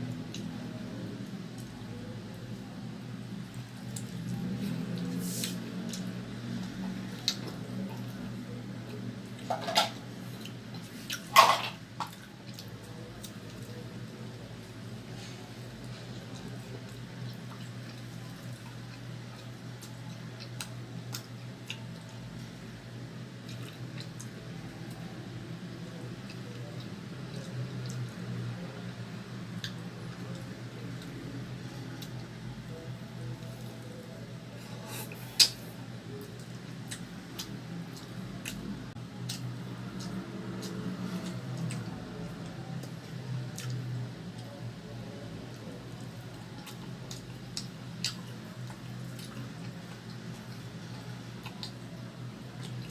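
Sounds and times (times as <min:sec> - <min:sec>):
low steady hum: 0:00.0 - 0:52.9
chewing mouth clicks and smacks: 0:36.4 - 0:43.0, 0:43.6 - 0:43.8, 0:45.9 - 0:51.8.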